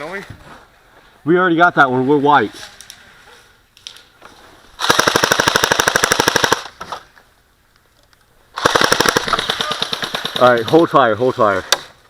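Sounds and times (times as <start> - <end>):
airsoft gun full-auto burst: 4.8 - 6.7, 8.6 - 10.8.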